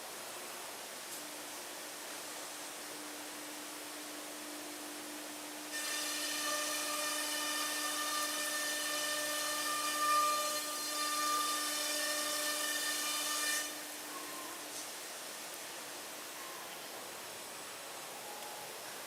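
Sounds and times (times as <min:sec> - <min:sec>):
drilling spindle whine: 0:05.7 - 0:13.9.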